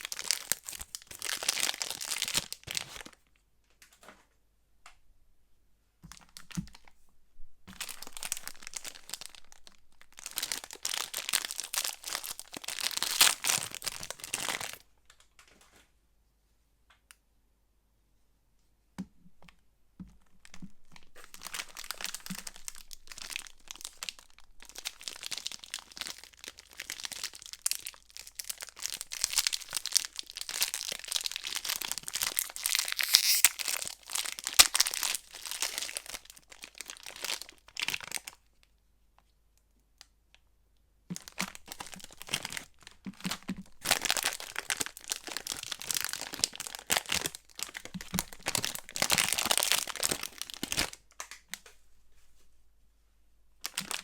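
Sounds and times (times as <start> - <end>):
soap wrappers crinkling and tearing: 0.0 - 3.2, 7.7 - 15.2, 20.2 - 38.5, 41.1 - 51.6, 53.6 - 54.0.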